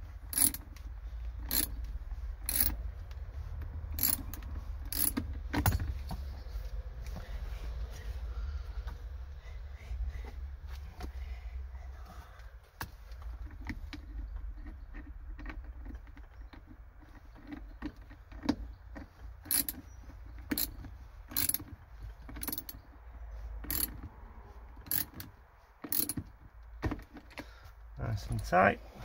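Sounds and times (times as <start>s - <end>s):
ratchet wrench clicking: 0.2s - 0.8s, 1.4s - 2.8s, 3.9s - 5.8s, 19.4s - 19.8s, 20.5s - 21.7s, 22.3s - 22.8s, 23.6s - 24.0s, 24.8s - 26.2s.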